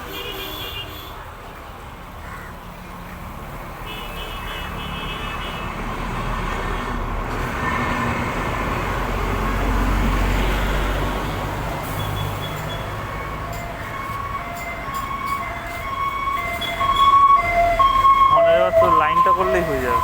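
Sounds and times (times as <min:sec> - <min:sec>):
vehicle passing by: 0:05.6 - 0:14.4.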